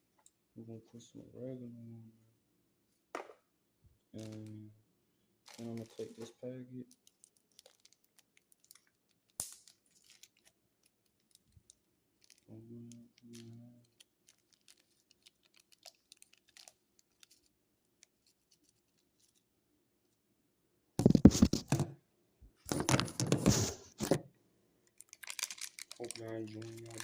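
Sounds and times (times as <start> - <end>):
seasoning packet crinkling: 5.5 - 6.3, 6.9 - 12.5, 13.4 - 19.4, 24.9 - 27.0.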